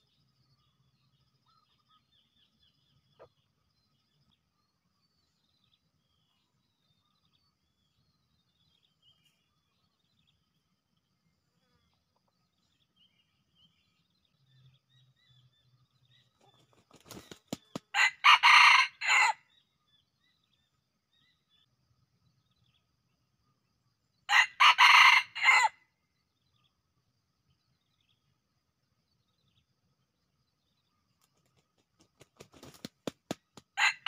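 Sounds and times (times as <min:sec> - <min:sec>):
rooster crowing: 0:17.9 - 0:19.4, 0:24.3 - 0:25.8, 0:33.8 - 0:34.0.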